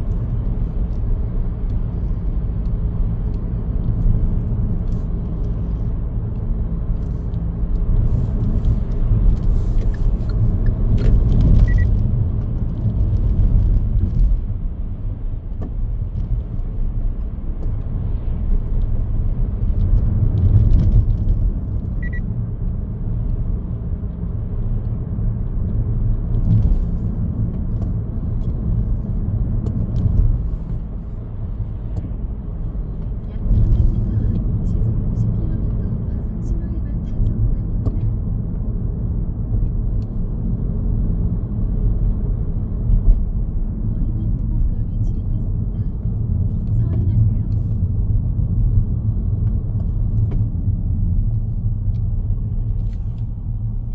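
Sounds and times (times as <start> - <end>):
car engine and road noise: 0.0 - 53.9
short high beeps: 11.6 - 11.9, 22.0 - 22.2.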